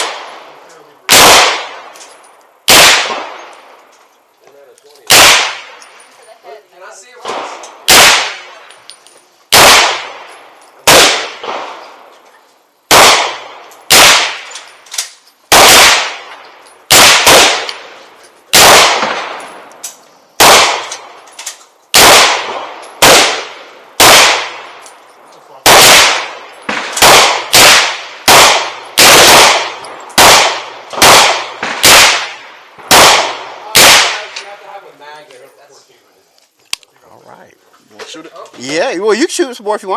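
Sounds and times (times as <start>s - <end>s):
gunshots echoing: 0.0s - 3.8s, 5.1s - 6.1s, 7.2s - 8.7s, 9.5s - 12.2s, 12.9s - 14.8s, 15.5s - 19.7s, 20.4s - 21.3s, 21.9s - 34.8s.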